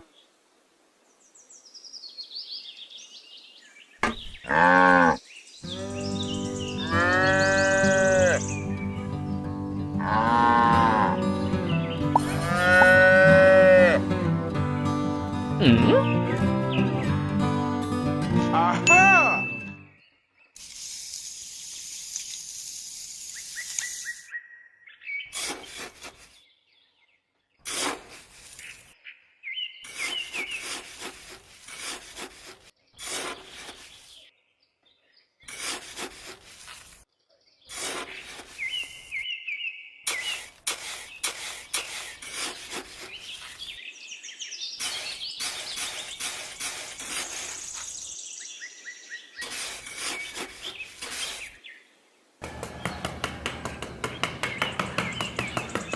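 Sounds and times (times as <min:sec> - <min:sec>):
birds chirping: 0:01.1 - 0:14.0, 0:28.6 - 0:30.9, 0:37.1 - 0:55.9
sharp clicks or taps: 0:12.1 - 0:12.9, 0:52.4 - 0:55.9.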